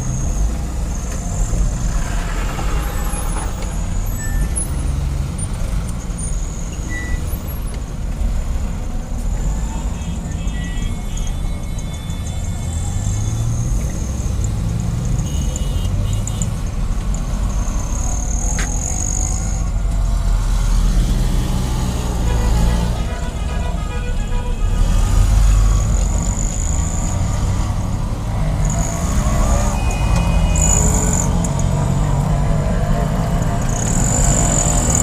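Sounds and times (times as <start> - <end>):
vehicle engines running: 0.0 - 35.0
car horns honking: 15.0 - 16.8, 21.5 - 35.0.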